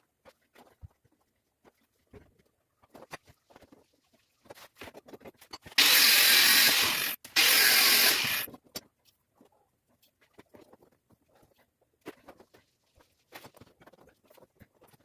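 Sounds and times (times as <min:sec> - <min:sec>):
power tool bursts: 0:05.8 - 0:08.5.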